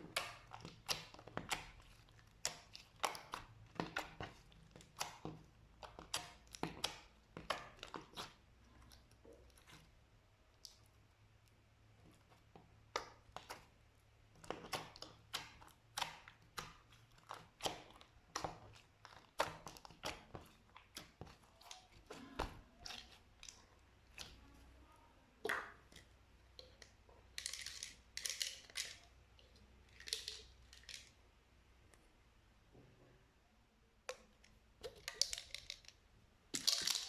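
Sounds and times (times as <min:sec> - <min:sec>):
slime crackling: 0:12.0 - 0:31.1.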